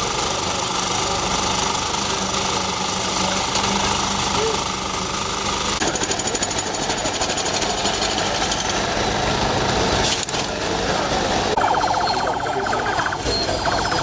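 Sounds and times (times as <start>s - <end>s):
high-pitched pulsing sound: 11.6s - 14.0s
machinery rattling pulse: 11.6s - 14.0s.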